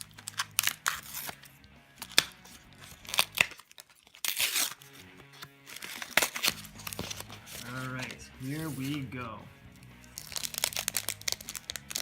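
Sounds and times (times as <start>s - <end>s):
foil wrapper tearing: 0.0s - 5.0s, 5.7s - 9.0s, 10.1s - 12.0s
foil wrapper crinkling: 2.0s - 5.0s, 10.1s - 12.0s.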